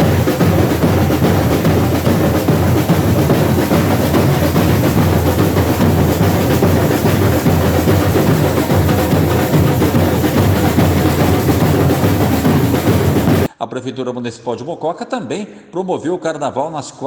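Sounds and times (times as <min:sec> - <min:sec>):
samba drums playing: 0:00.0 - 0:13.5.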